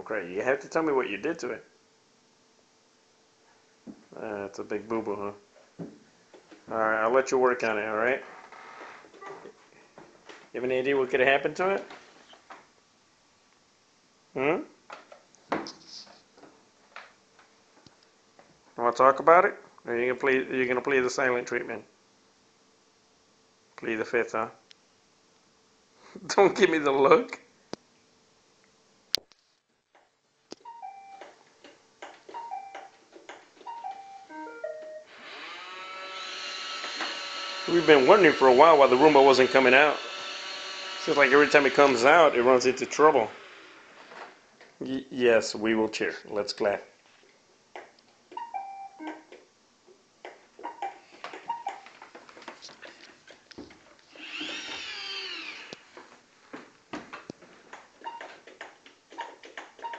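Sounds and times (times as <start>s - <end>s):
vacuum motor whirring: 35.1s - 44.4s, 54.0s - 56.0s.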